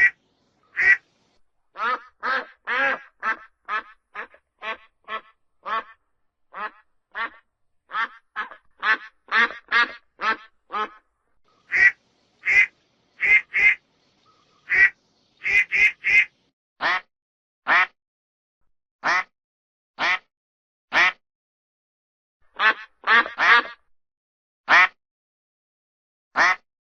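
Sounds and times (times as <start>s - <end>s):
duck quacking: 0.0s - 1.0s, 1.8s - 11.1s, 11.7s - 13.8s, 14.6s - 17.1s, 17.7s - 18.0s, 19.0s - 19.3s, 20.0s - 20.3s, 20.9s - 21.2s, 22.6s - 23.8s, 24.7s - 25.0s, 26.4s - 26.6s.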